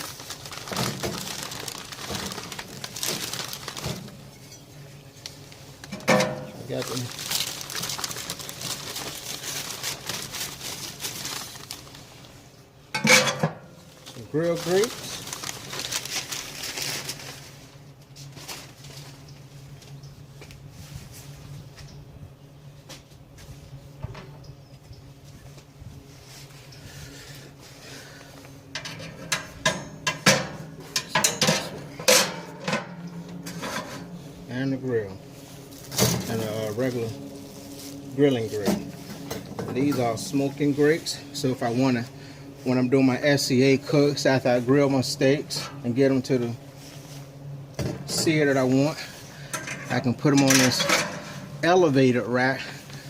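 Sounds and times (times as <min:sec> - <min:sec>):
packaging rustling and crinkling: 0:00.0 - 0:04.5, 0:05.3 - 0:12.4, 0:13.9 - 0:19.2, 0:35.0 - 0:45.2
metal grill grates clanking: 0:49.5 - 0:51.6.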